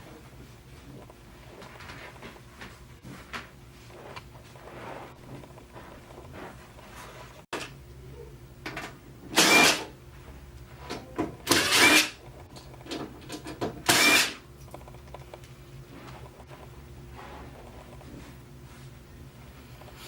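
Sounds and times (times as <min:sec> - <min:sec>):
electric screwdriver whining: 0:09.4 - 0:09.9, 0:11.5 - 0:12.2, 0:13.9 - 0:14.4.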